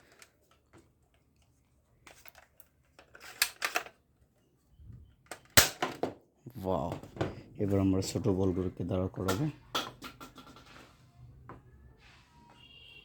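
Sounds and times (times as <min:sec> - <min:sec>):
hard objects clicking and knocking: 0:09.2 - 0:10.9.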